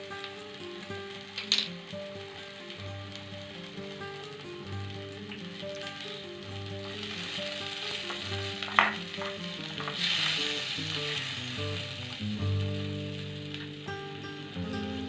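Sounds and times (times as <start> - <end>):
food sizzling in a pan: 0.0 - 15.0
utensil clicking against pan: 1.2 - 1.9, 6.8 - 11.3.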